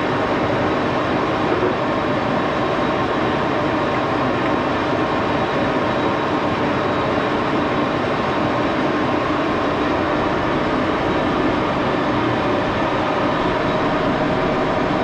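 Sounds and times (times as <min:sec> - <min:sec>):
metal lathe running: 0:04.6 - 0:15.0.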